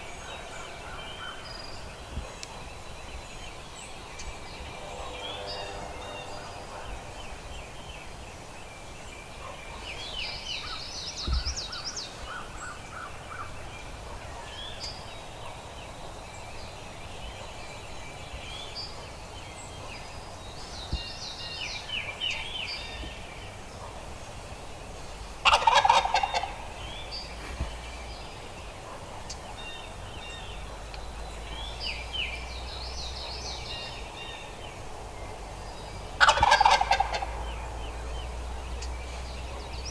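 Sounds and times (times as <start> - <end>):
wild turkey gobbling: 25.4 - 27.0, 36.2 - 37.6.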